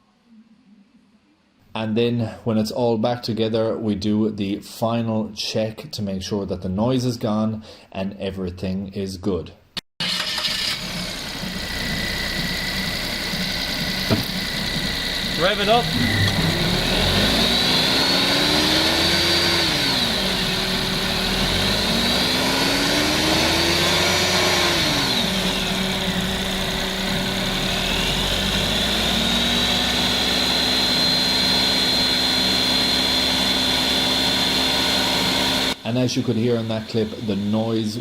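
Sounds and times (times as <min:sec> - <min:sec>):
car engine revving: 0:10.2 - 0:38.0.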